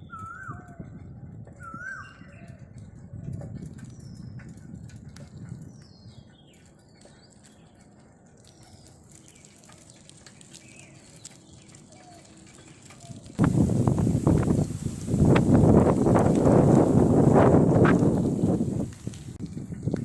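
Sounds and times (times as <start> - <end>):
wind gust hitting microphone: 0.0 - 6.5, 13.4 - 20.0
low wind rumble: 0.0 - 9.2, 13.1 - 20.0.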